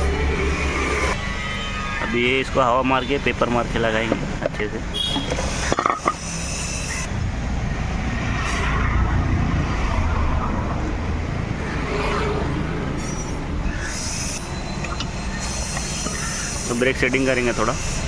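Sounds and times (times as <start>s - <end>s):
workshop rumble: 0.0s - 10.1s, 10.8s - 18.0s
compressed air hissing: 13.8s - 18.0s.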